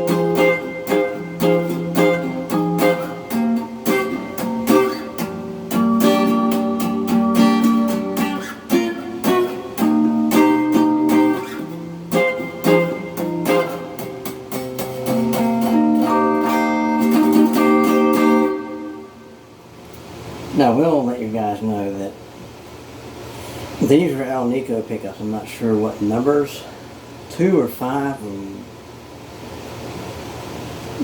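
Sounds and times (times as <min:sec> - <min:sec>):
overdriven electric guitar: 0:00.0 - 0:19.4.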